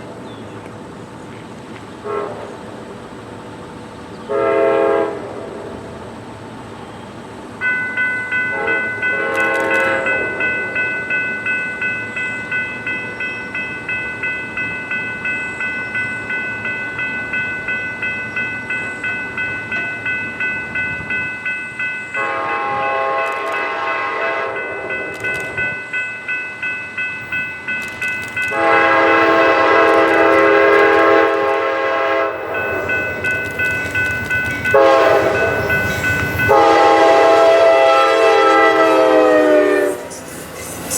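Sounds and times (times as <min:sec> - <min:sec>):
locomotive horn blasts: 0:02.0 - 0:02.6, 0:04.3 - 0:05.5, 0:08.5 - 0:10.4, 0:22.2 - 0:25.1, 0:28.5 - 0:32.8, 0:34.7 - 0:35.8, 0:36.4 - 0:40.1
crossing bell ringing: 0:07.6 - 0:40.9.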